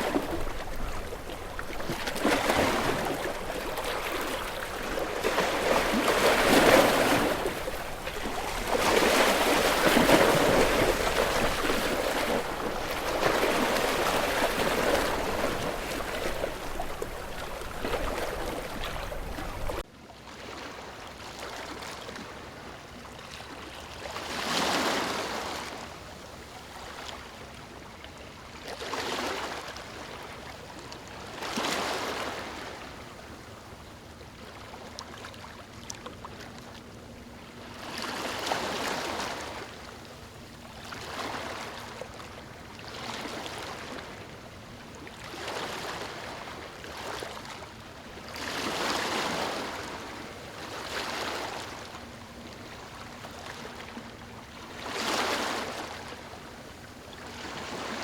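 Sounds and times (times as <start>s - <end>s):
water rushing in swells: 0.0s - 19.8s.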